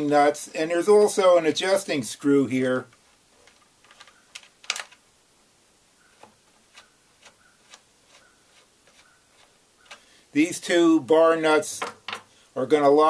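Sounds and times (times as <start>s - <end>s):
chainsaw parts clicking and tapping: 2.9s - 5.0s, 8.9s - 10.1s.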